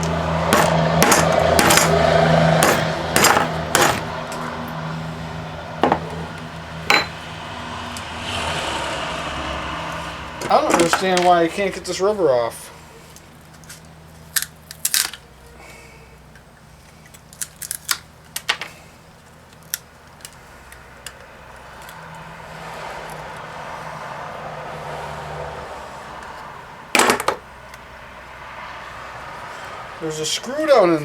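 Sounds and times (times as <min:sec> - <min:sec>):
scraping: 0:00.0 - 0:04.8.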